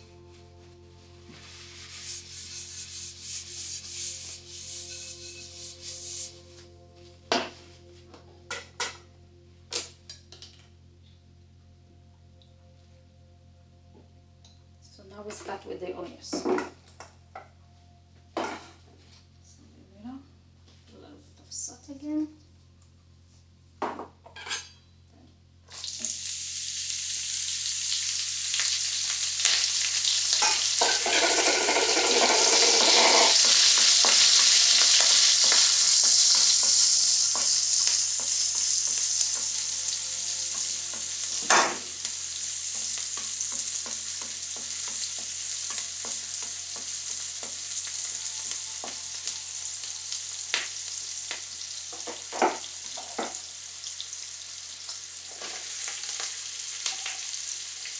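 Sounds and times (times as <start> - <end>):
onions sizzling in a wok: 0.0 - 9.1, 25.7 - 57.9.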